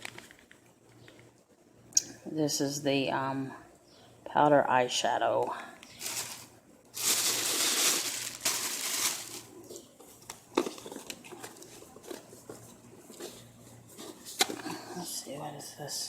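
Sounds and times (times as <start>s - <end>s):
packaging crinkling: 5.9s - 12.3s
soft rustles: 5.9s - 14.8s.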